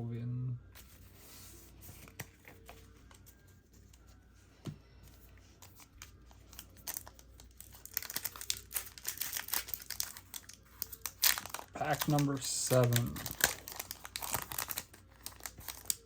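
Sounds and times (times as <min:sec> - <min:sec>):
foil wrapper crinkling and tearing: 0:05.6 - 0:16.0.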